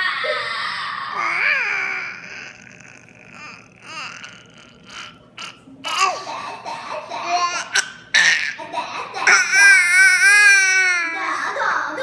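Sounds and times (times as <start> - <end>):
baby laughing: 0.0 - 12.0
baby squealing: 1.2 - 6.1.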